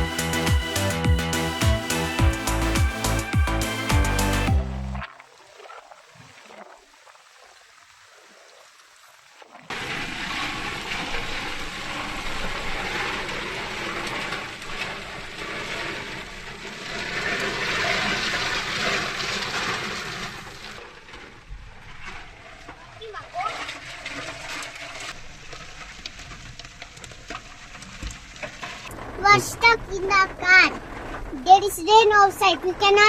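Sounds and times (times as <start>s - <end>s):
heavy rain pouring: 0.0s - 5.1s, 9.7s - 21.0s.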